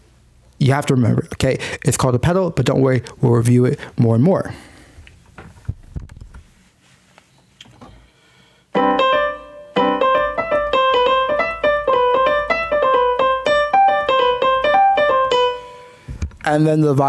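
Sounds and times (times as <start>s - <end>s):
piano chords and repeated notes: 8.8s - 16.1s.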